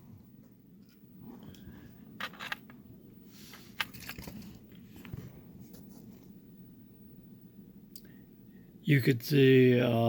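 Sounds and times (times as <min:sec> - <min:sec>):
small metal lock parts clicking: 0:02.2 - 0:02.8.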